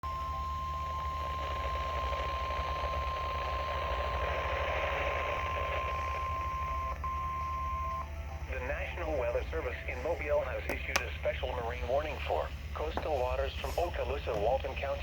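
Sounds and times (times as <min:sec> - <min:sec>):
steady high alarm tone: 0:00.0 - 0:10.3
low hum: 0:00.0 - 0:15.0
radio static: 0:01.2 - 0:15.0.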